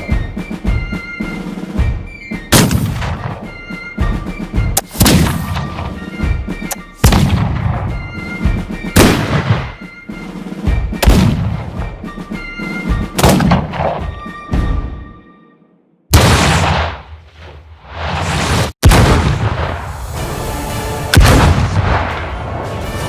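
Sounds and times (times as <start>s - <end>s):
echoing gunshot-like bangs: 2.5s - 3.5s, 4.8s - 6.0s, 7.0s - 7.9s, 9.0s - 9.8s, 13.2s - 14.0s, 16.1s - 17.2s.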